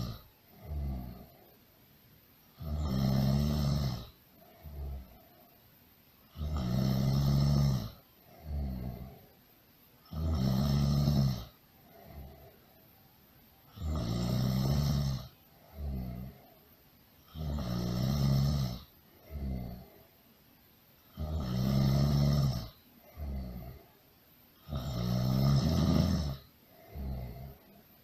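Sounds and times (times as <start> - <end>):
loud rattling snoring: 0.0 - 1.4, 2.6 - 5.2, 6.3 - 9.3, 10.0 - 12.6, 13.7 - 16.5, 17.3 - 20.0, 21.1 - 23.9, 24.6 - 27.7.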